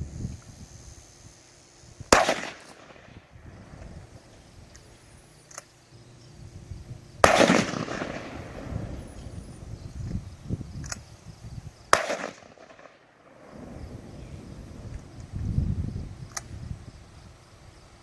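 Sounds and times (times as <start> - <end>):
shotgun shots with echo: 2.1 - 3.2, 7.2 - 8.7, 11.9 - 13.5.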